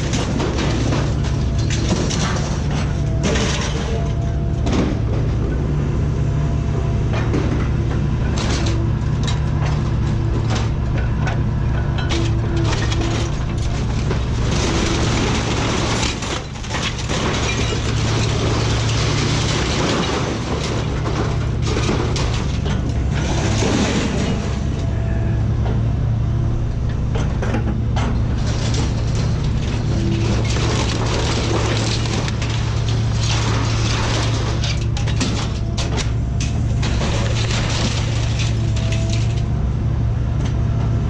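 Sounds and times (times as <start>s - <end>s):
engine running: 0.0s - 41.0s
mechanical rattling and clatter: 26.9s - 39.4s.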